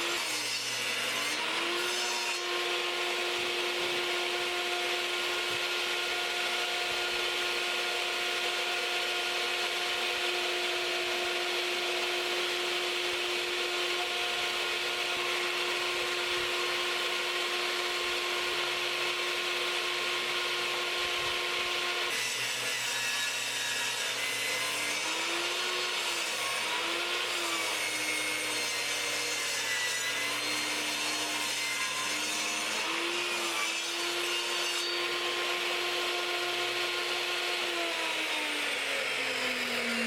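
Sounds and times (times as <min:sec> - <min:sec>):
power saw cutting wood: 0:00.0 - 0:40.0.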